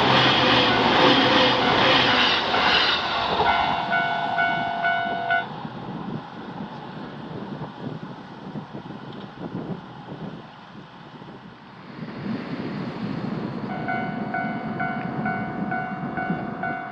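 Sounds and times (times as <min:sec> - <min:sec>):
level crossing warning bell: 0:00.0 - 0:05.7, 0:13.7 - 0:16.9
train passing: 0:00.0 - 0:16.9.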